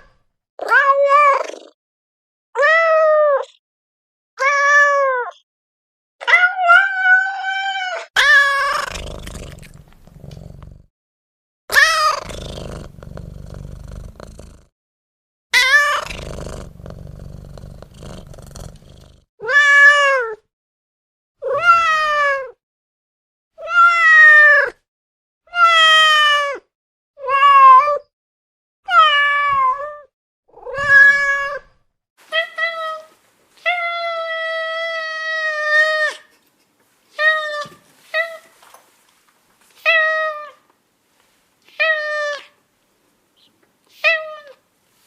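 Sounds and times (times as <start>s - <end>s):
cat meowing: 6.2s - 8.9s, 11.7s - 12.3s, 15.6s - 16.3s, 28.9s - 31.7s.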